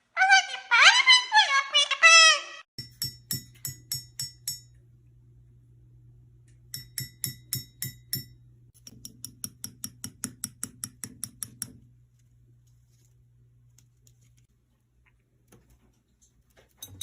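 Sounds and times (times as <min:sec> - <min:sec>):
sharp ringing taps: 0:02.8 - 0:04.8, 0:06.7 - 0:08.4
low steady hum: 0:02.8 - 0:17.0.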